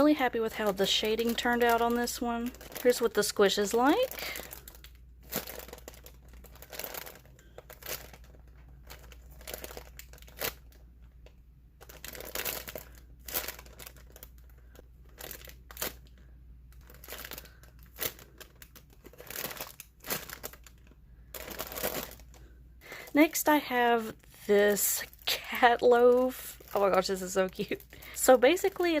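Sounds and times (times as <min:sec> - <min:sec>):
plastic packaging crinkling: 0:00.0 - 0:29.0.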